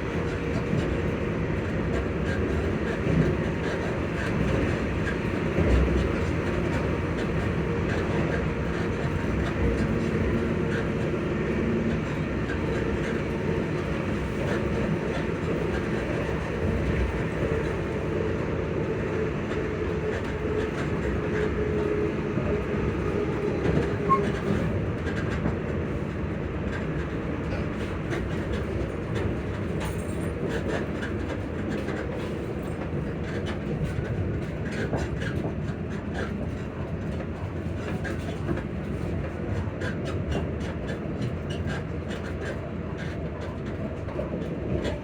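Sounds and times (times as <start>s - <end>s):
train rumbling in motion: 0.0s - 45.0s.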